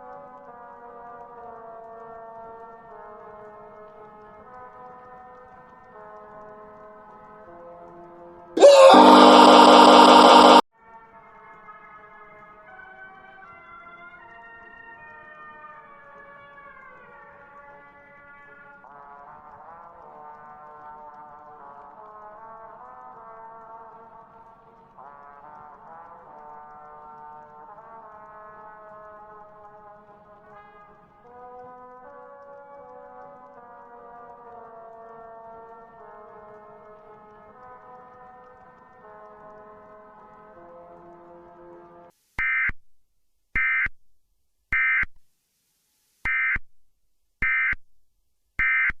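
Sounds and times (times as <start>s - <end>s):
harsh digital screeches: 8.6s - 10.6s
slow held music chords: 8.6s - 10.6s.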